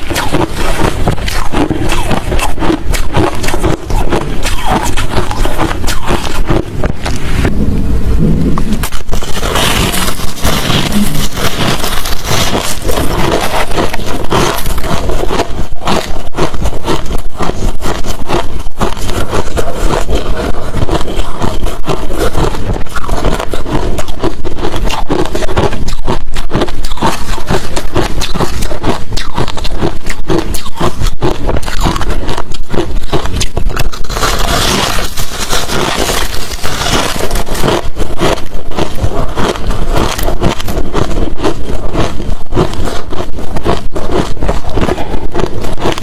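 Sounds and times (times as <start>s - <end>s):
ice crunched between teeth: 0.0s - 7.5s, 8.6s - 46.0s.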